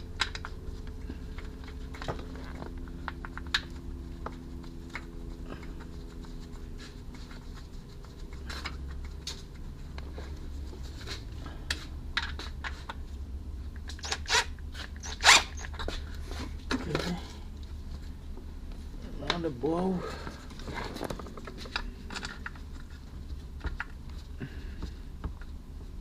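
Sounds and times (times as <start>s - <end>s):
short metallic rasps: 14.0s - 15.9s.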